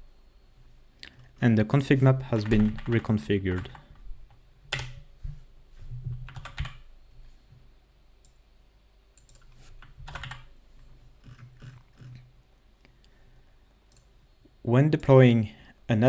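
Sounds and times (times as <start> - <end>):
faint low hum: 0.0 - 16.0
computer keyboard keystrokes: 2.4 - 3.0, 6.2 - 6.8, 9.2 - 10.5.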